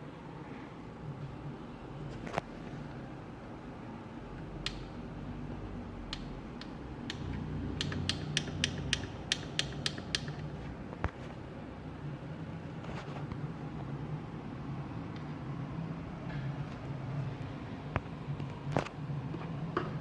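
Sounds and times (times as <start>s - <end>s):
sharp mechanical clicks: 6.1s - 10.5s.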